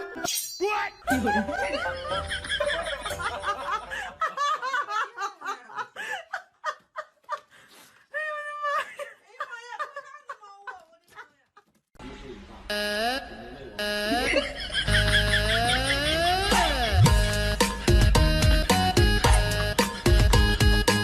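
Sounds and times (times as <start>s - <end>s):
people laughing: 1.1s - 7.5s, 8.4s - 11.6s, 14.0s - 20.6s.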